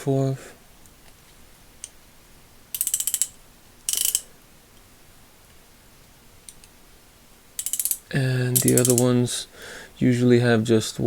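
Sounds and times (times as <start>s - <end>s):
ratchet clicking: 2.7s - 4.3s, 7.6s - 9.1s.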